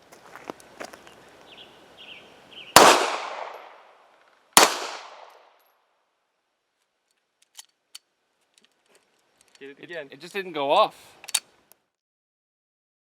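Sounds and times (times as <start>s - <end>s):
pistol shots echoing: 2.8s - 3.8s, 4.6s - 5.4s.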